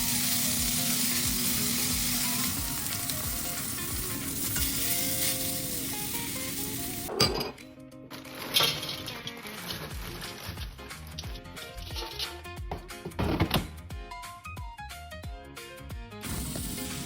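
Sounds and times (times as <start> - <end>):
steak sizzling in a pan: 0.0 - 7.1, 16.3 - 17.0.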